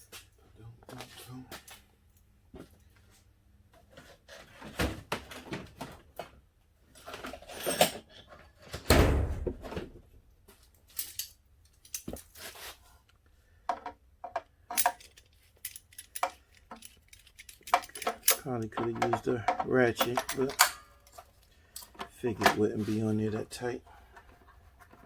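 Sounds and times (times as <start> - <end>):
scrape: 12.4 - 13.0
hand tools clicking and rattling: 13.7 - 22.7
plastic panels being handled: 17.6 - 21.3.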